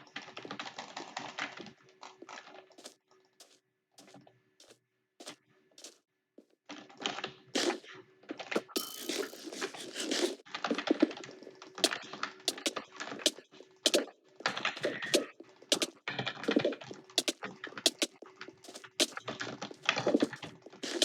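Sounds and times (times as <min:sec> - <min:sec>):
keyboard typing: 0:11.8 - 0:19.3.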